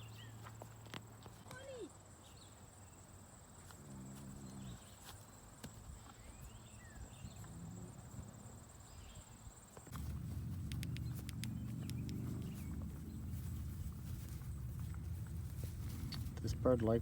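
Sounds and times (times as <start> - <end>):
hooves clicking on grass: 0.0 - 1.7, 9.7 - 17.0
low rumble: 9.9 - 17.0.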